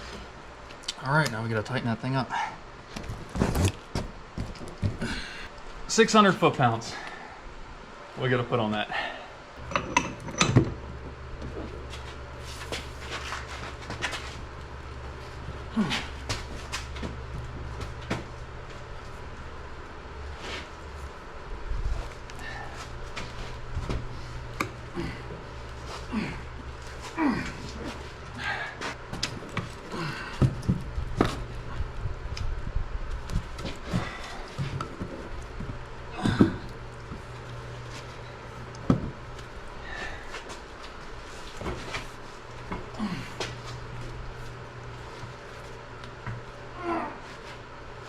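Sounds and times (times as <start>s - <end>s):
steady low hum: 0.0s - 48.0s
metal tools clinking and knocking: 9.6s - 10.8s.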